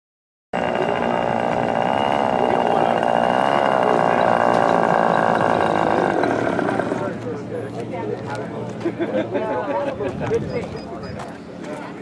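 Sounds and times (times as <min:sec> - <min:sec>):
model airplane engine running: 0:00.6 - 0:08.4.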